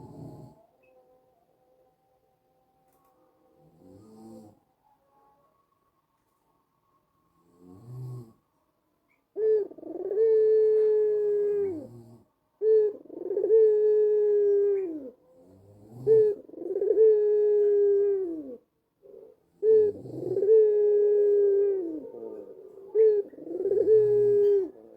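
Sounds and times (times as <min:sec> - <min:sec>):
dove cooing: 0:00.0 - 0:00.9, 0:09.1 - 0:24.9.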